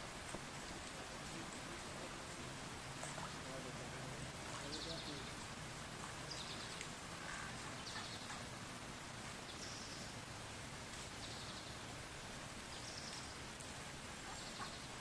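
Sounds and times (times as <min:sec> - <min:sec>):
outdoor background noise: 0:00.0 - 0:15.0
small bird chirping: 0:06.2 - 0:08.5, 0:09.4 - 0:10.2, 0:11.0 - 0:11.8, 0:12.7 - 0:13.4, 0:14.2 - 0:15.0.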